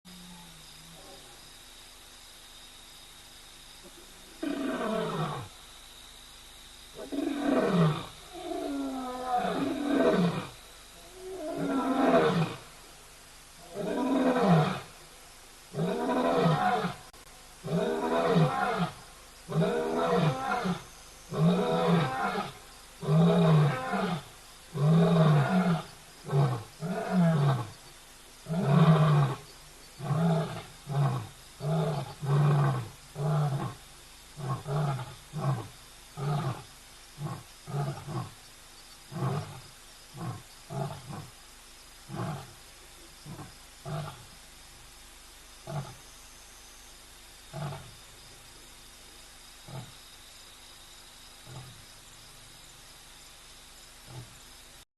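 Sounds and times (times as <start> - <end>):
lion roaring: 17.7 - 27.7.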